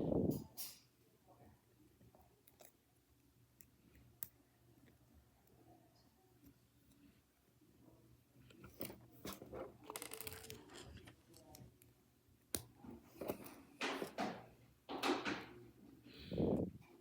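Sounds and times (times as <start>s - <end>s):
plastic pieces rattling: 9.8s - 11.5s
plastic building pieces clicking: 9.8s - 11.6s.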